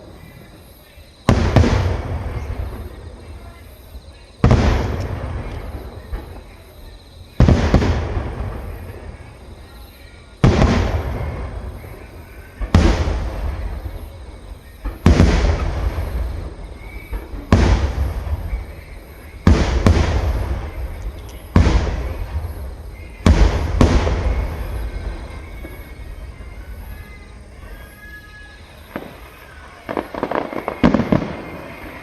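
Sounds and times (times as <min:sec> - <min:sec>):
firework shells booming: 0:01.2 - 0:27.8, 0:28.6 - 0:32.0.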